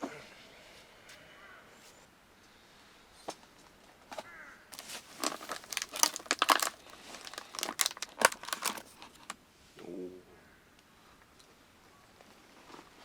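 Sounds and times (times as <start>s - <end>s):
crinkling and crackling: 4.7s - 9.4s.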